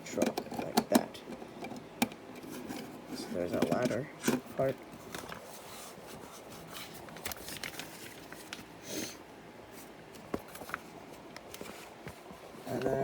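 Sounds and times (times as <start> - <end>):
soft rustle: 4.9 - 8.7, 9.7 - 13.0.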